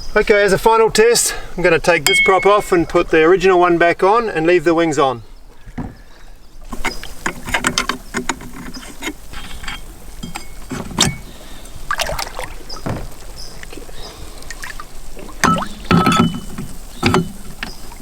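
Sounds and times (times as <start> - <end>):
ringing metal notes: 2.0 - 2.9
metal tools clicking and clinking: 7.2 - 11.2, 15.4 - 17.4.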